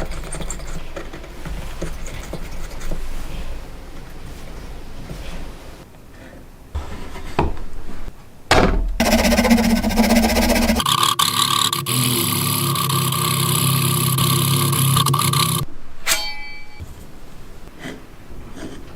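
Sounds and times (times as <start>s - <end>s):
power tool motor humming: 9.0s - 15.6s.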